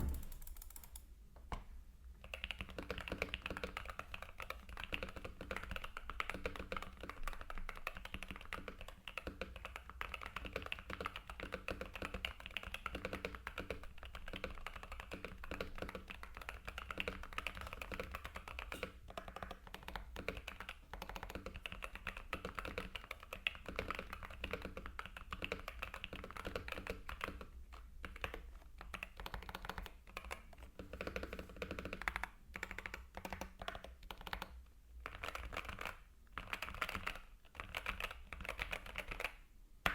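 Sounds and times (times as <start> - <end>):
keyboard key clacks: 0.0 - 0.9.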